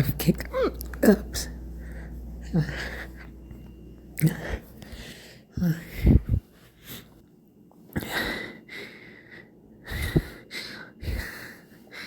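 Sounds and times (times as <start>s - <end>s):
breathing: 1.7s - 3.3s, 4.4s - 7.2s, 8.0s - 12.0s.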